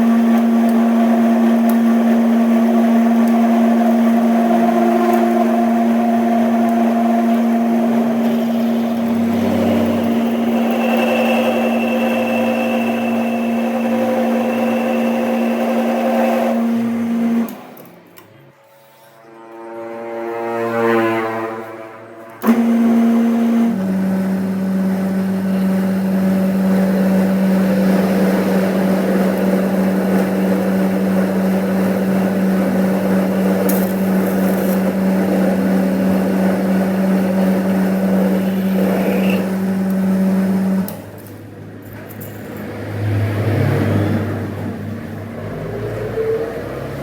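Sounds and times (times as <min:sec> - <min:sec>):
workshop machine humming and hissing: 0:00.0 - 0:19.5, 0:21.5 - 0:47.0
lower hum: 0:04.2 - 0:17.6.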